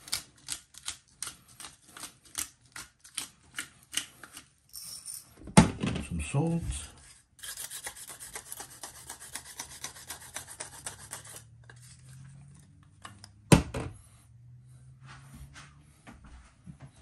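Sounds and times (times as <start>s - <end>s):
salt grinder rasping: 7.4s - 11.8s.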